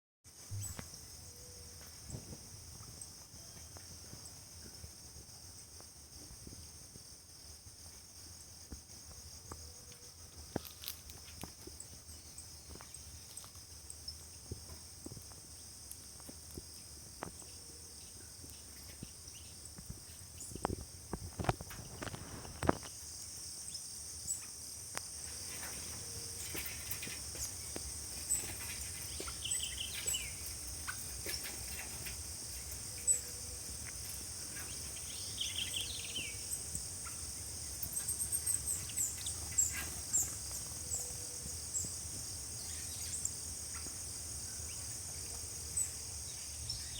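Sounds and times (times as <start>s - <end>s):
insect chorus: 0.3s - 46.9s
bird chirps: 0.5s - 2.2s, 28.2s - 31.8s, 32.9s - 33.6s, 34.5s - 41.9s.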